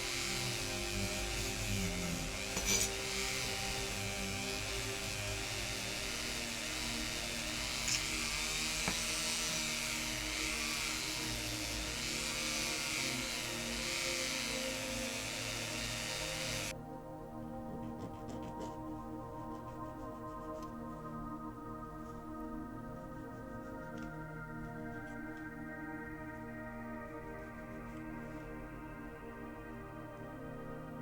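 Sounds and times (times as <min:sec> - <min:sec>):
rotary wire brush whirring: 0:00.0 - 0:16.7.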